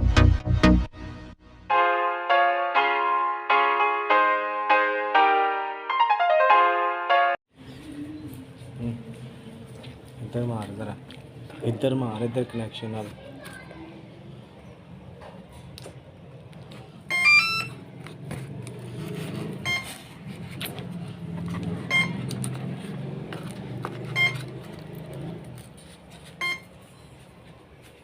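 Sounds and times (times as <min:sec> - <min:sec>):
short electronic beep: 0:19.6 - 0:19.9, 0:21.9 - 0:22.2, 0:24.2 - 0:24.4, 0:26.4 - 0:26.7.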